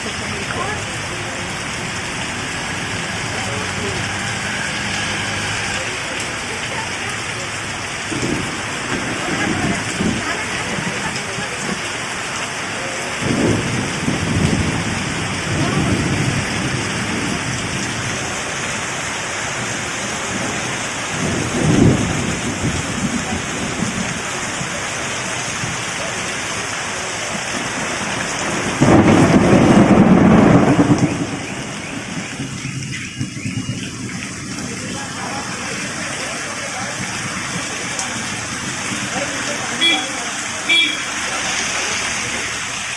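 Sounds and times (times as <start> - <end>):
heavy rain falling: 0.0 - 42.9
thunder rolling: 8.0 - 11.8, 13.2 - 18.4, 19.6 - 24.2, 27.5 - 35.2.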